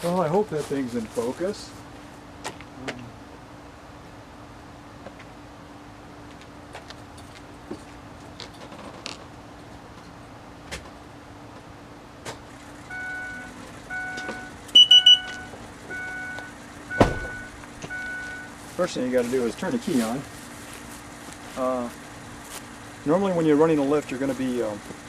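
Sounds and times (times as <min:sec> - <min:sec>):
shrill high beep: 0:12.9 - 0:18.5
repeating warning beep: 0:12.9 - 0:18.6
loud thump: 0:17.0 - 0:17.4.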